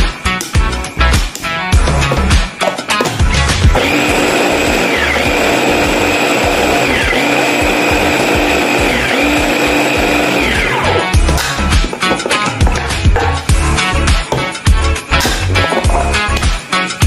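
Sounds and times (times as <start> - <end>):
kitchen blender running: 3.7 - 11.1.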